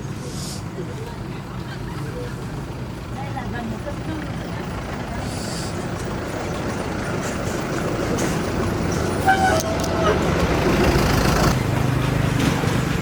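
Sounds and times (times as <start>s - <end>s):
motor vehicle rumble on road: 0.0s - 13.0s.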